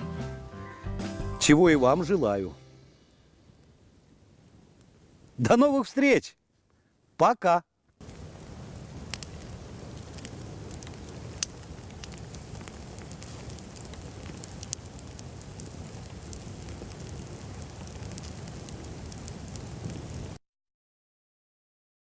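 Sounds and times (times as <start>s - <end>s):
campfire burning: 1.4s - 7.2s, 7.8s - 20.4s
fire crackling and popping: 1.4s - 20.4s.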